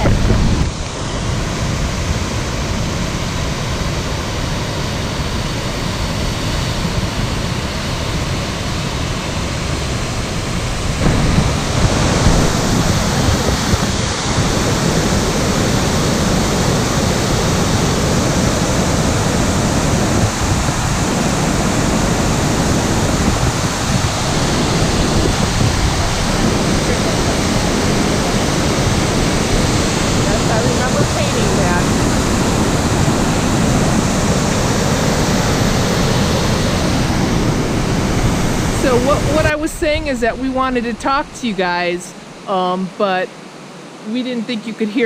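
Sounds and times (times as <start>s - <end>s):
waterfall pouring: 8.8s - 41.2s.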